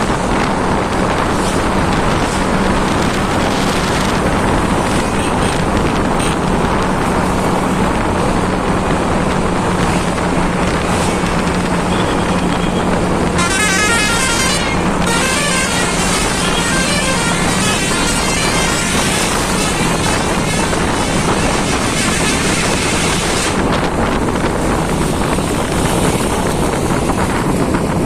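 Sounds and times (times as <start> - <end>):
wind and road noise: 0.0 - 28.0
bus horn warbling melody: 11.8 - 23.5.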